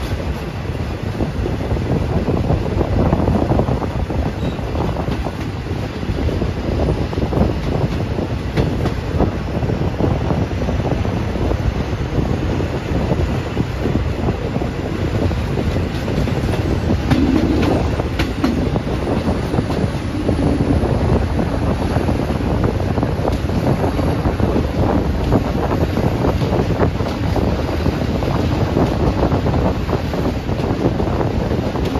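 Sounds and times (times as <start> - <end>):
train rumble: 0.0 - 31.9
wheels clacking over rail joints: 7.3 - 9.3, 14.1 - 31.9.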